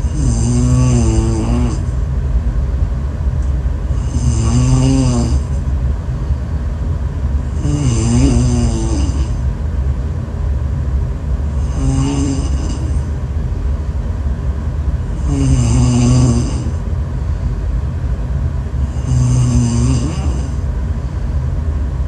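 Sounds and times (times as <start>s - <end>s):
woman snoring: 0.0s - 1.9s, 3.9s - 5.6s, 7.5s - 9.4s, 11.6s - 13.1s, 15.1s - 16.8s, 18.8s - 20.6s
steady low rumble: 0.0s - 22.0s.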